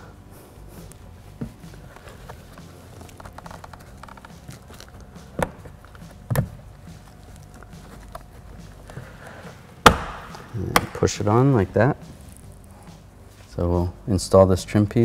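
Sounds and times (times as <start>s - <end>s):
sharp knocks: 9.8s - 11.0s.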